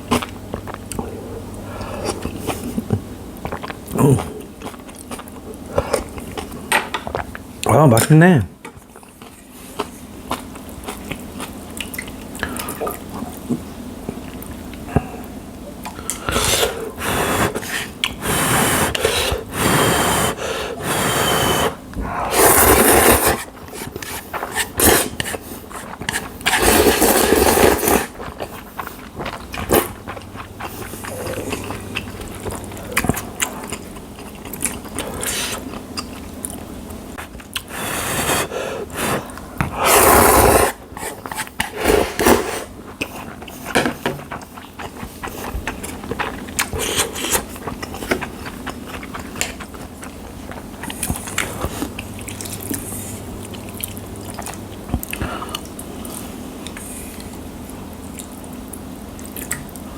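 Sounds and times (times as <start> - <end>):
chewing and mouth sounds: 0.0 - 7.6, 8.6 - 59.9
person slurping noodles: 16.0 - 33.9, 37.6 - 45.8.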